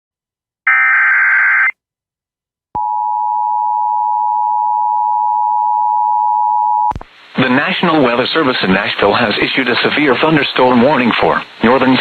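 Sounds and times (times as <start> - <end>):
digital data screech: 0.7 - 1.7.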